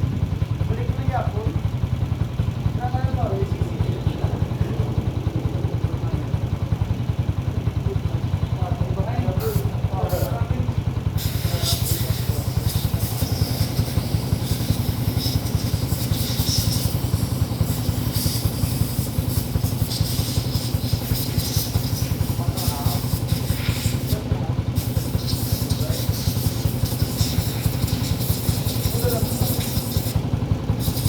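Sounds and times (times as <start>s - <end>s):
scooter engine idling: 0.0s - 31.0s.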